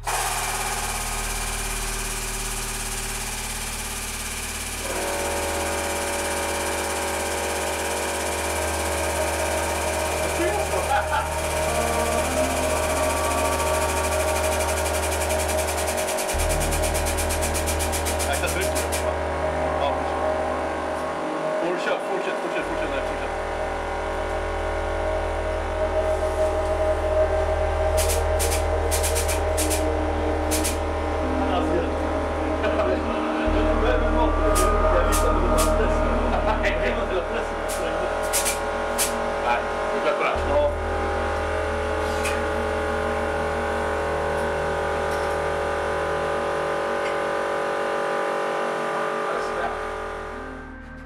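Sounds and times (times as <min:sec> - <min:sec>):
electric pump motor humming and whining: 0:00.0 - 0:51.0.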